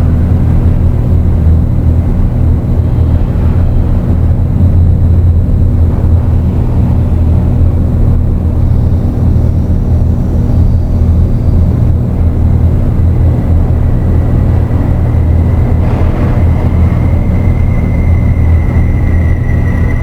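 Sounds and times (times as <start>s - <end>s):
dark ambient drone music: 0.0s - 20.0s.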